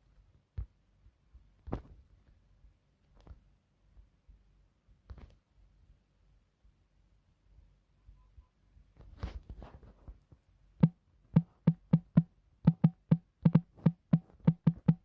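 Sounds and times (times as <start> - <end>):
percussion beat with knocking hits: 10.8 - 15.0.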